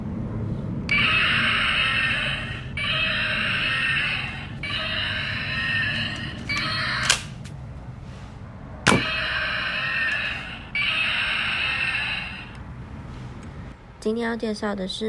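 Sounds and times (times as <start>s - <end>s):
toy gun electronic sound effects: 0.9s - 7.4s, 8.9s - 12.6s
sharp clicks: 2.9s - 7.5s.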